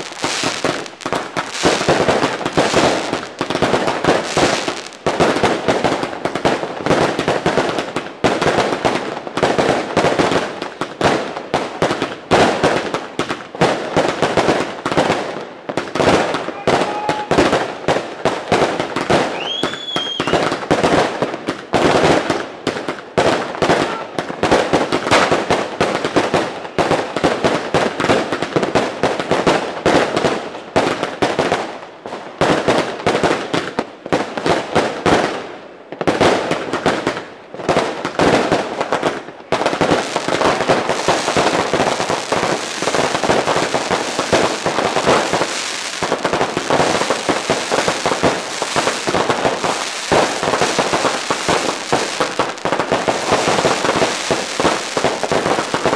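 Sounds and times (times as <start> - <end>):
fireworks bangs and crackles: 0.0 - 55.9
firework whistle: 16.5 - 17.5, 19.2 - 20.5.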